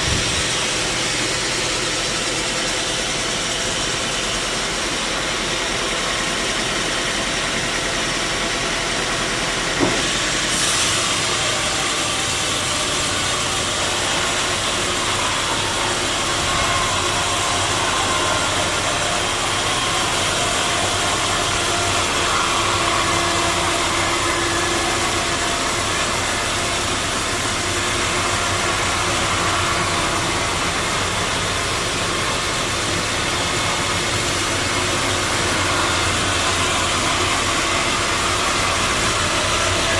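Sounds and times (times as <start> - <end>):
sawmill machinery running: 0.0 - 39.9
sharp knock: 9.8 - 10.1.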